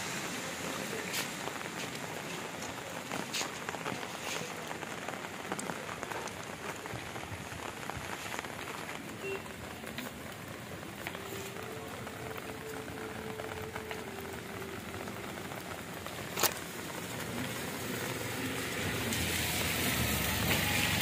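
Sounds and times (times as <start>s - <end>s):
steady rain pattering: 0.0s - 21.0s.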